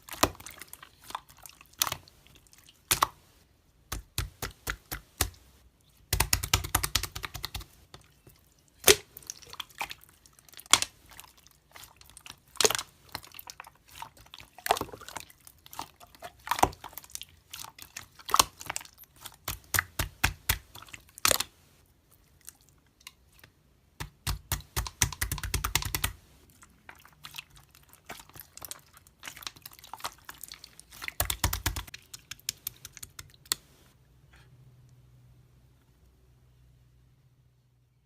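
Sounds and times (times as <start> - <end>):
sharp clicks and taps: 3.9 - 5.5, 6.1 - 7.7, 24.0 - 26.2, 31.2 - 33.7.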